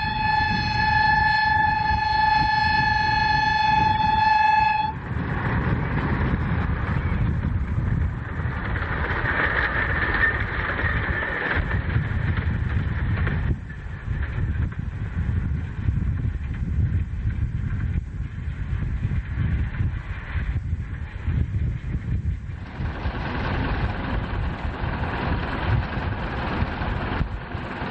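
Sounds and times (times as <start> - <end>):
locomotive whistle: 0.0 - 5.0
rushing noise with low rumble: 0.0 - 27.9.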